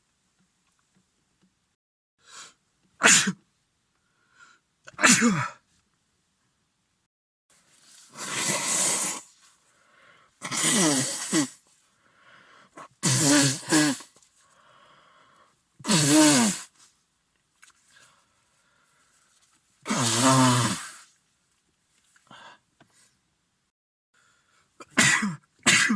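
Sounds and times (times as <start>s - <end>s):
man sneezing: 3.0s - 3.4s, 4.9s - 5.6s, 8.2s - 9.4s, 10.4s - 11.6s, 12.8s - 14.1s, 15.8s - 16.7s, 19.9s - 21.0s, 24.8s - 25.9s.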